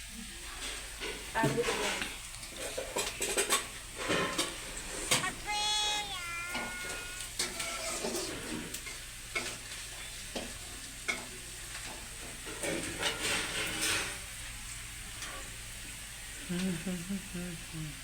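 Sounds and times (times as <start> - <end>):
curry sizzling in a pan: 6.8 - 16.5.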